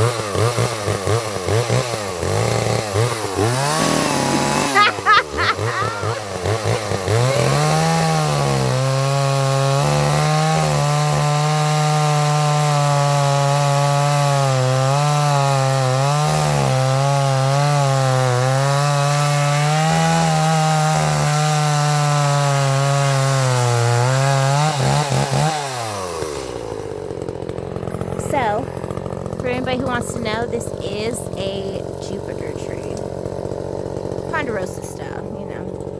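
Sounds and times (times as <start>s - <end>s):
chainsaw cutting wood: 0.0s - 35.9s.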